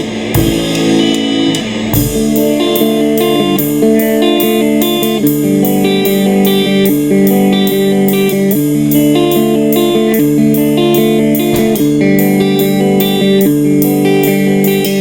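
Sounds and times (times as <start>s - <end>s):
steady drum beat: 0.0s - 5.4s, 8.1s - 12.4s
electric guitar playing: 0.0s - 15.0s.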